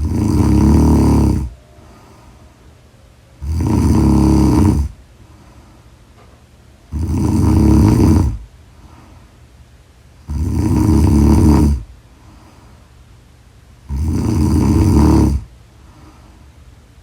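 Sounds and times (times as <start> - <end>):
loud snoring: 0.0 - 2.1, 3.4 - 5.0, 6.9 - 8.5, 10.2 - 11.9, 13.8 - 15.5.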